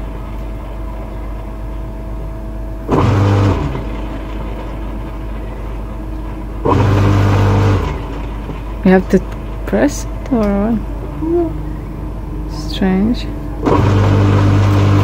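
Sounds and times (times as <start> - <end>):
wood chipper running: 0.0 - 15.0.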